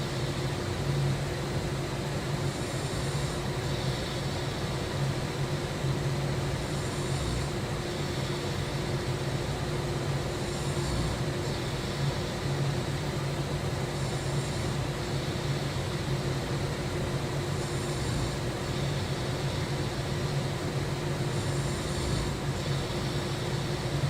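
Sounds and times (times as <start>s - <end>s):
person snoring: 6.6s - 7.6s, 10.4s - 11.9s, 17.6s - 18.5s, 21.3s - 23.0s.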